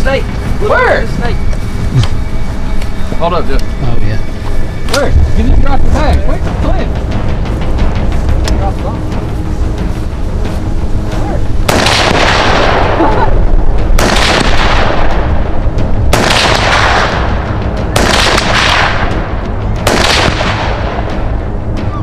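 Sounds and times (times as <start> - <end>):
rifle shots with rolling echo: 11.6 - 13.2, 13.9 - 21.2.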